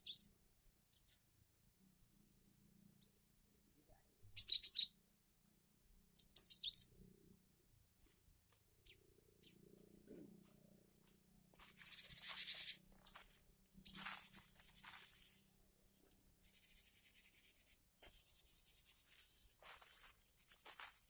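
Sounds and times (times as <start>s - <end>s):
bird chirps: 0.0s - 1.4s, 4.2s - 7.2s, 8.8s - 9.8s, 11.2s - 20.8s
scratchy rustling: 13.9s - 15.5s.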